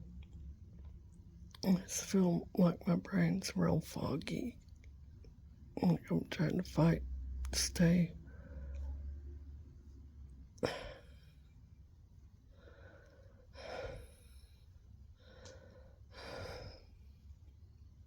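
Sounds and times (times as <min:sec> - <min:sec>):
person breathing slowly: 0:08.2 - 0:09.0, 0:12.5 - 0:17.0.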